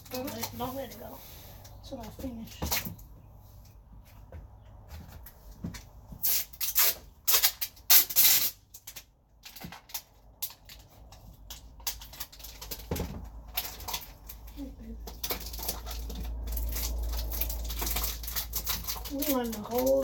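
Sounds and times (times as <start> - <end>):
tape ripping off roll: 6.1 - 10.8.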